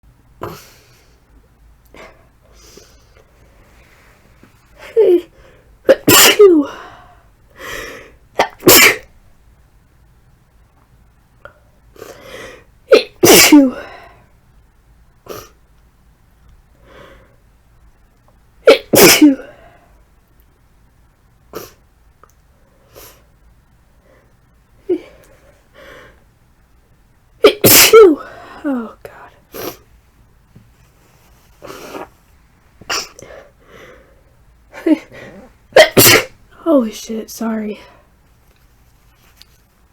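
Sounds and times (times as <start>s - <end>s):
woman sneezing: 5.9s - 6.8s, 8.4s - 9.1s, 12.9s - 13.9s, 18.7s - 19.5s, 27.4s - 28.7s, 32.9s - 33.4s, 34.8s - 36.4s.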